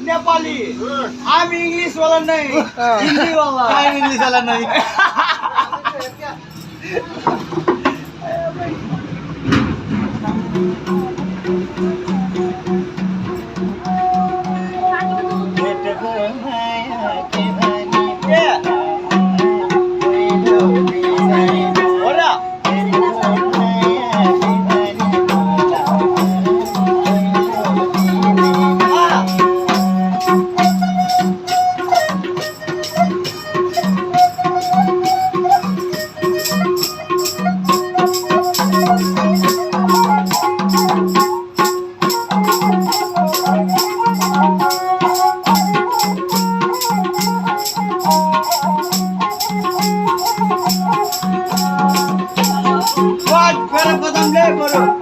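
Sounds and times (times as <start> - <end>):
wavering melody line: 17.0 - 55.0
fast shaking rattle: 34.2 - 54.9.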